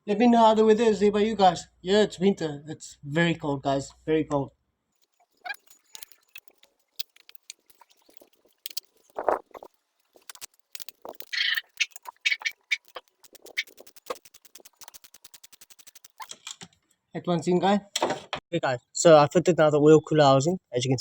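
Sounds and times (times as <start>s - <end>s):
metal tools clinking and knocking: 5.0s - 9.3s
ratchet clicks: 10.1s - 16.4s.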